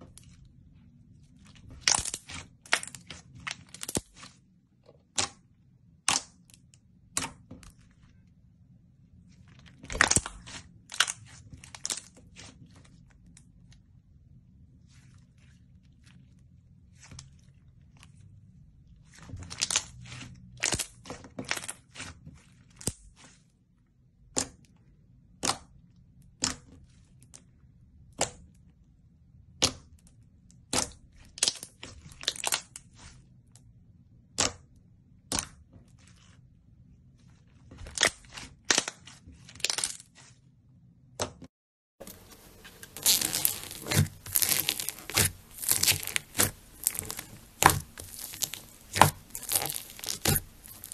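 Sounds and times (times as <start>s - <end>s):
slime popping and crackling: 1.7s - 4.3s, 42.8s - 50.9s.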